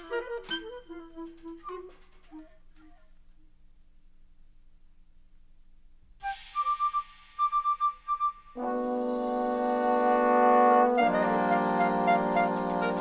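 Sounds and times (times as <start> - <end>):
jazz orchestra music: 0.0 - 2.5, 8.6 - 13.0
sustained brass chord: 8.6 - 13.0.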